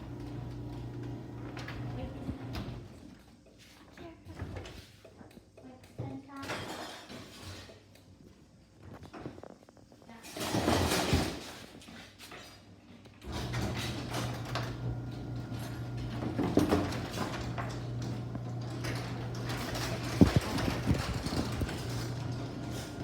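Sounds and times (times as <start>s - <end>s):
garage door opener motor hum: 0.0s - 3.0s, 13.2s - 23.0s.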